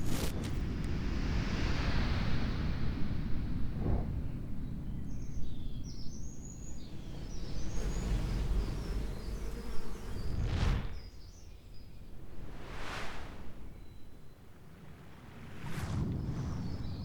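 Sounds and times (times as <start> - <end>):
wind buffeting microphone: 0.6 - 17.0
whoosh: 3.2 - 4.6, 9.9 - 14.6
small birds chirping: 4.2 - 12.4.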